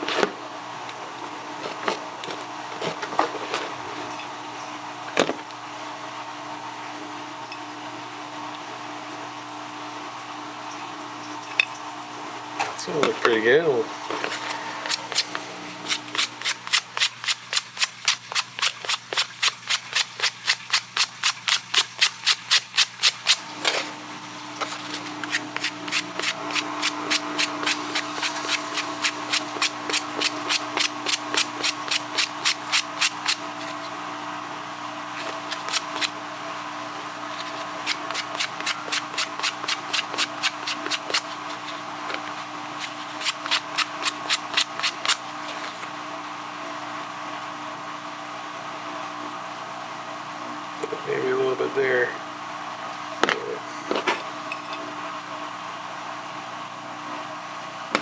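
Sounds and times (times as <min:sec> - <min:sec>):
rapid rubbing strokes: 0:14.1 - 0:23.4, 0:24.6 - 0:33.9, 0:35.2 - 0:36.2, 0:37.3 - 0:45.8.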